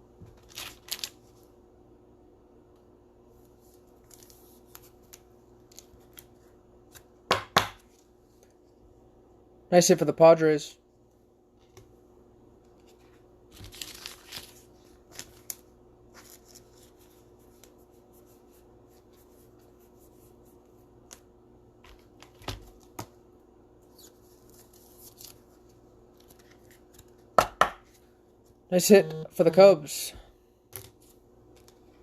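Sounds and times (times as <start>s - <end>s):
faint steady hum: 0.0s - 32.0s
cards rustling and scraping: 3.4s - 7.2s, 12.6s - 23.2s, 23.8s - 28.6s, 30.7s - 32.0s.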